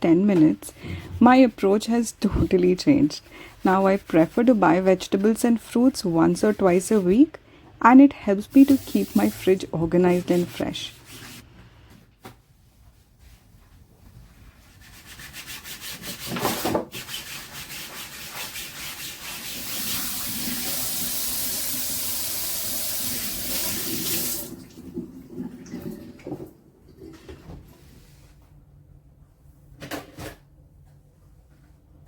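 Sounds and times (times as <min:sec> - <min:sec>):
rubbing strokes: 0:14.2 - 0:19.6
water running from a tap: 0:19.2 - 0:26.1.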